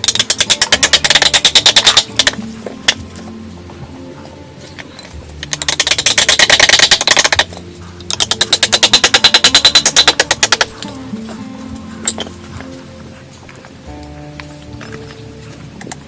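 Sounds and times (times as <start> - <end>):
rapid even tapping: 0.0 - 3.1, 5.4 - 12.8
soft background music: 0.0 - 16.0.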